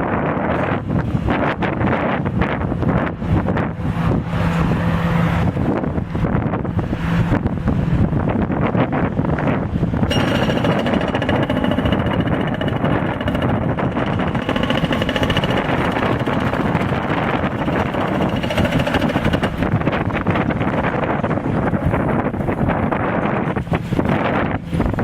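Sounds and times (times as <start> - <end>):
wind buffeting microphone: 0.0 - 25.0
hydraulic breaker hammering concrete: 10.0 - 21.4
machine engine running: 10.0 - 22.1.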